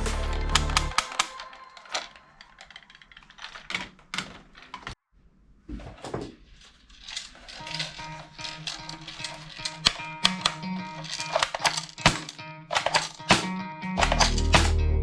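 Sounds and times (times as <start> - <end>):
background music: 0.0 - 2.0, 8.4 - 15.0
plastic toy guns clicking: 0.6 - 5.0, 7.0 - 14.8.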